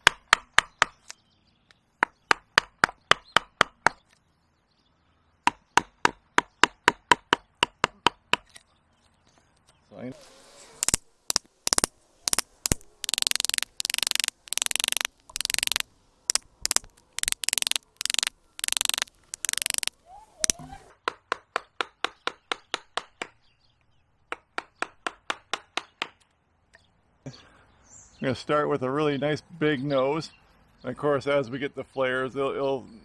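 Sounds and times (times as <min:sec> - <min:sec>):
quick sharp taps: 0:10.2 - 0:20.8.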